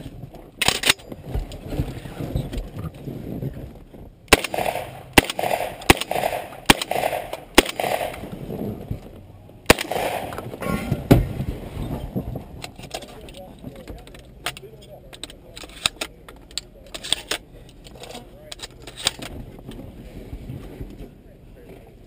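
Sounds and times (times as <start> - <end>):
gunshots: 4.3 - 8.6, 9.7 - 11.4.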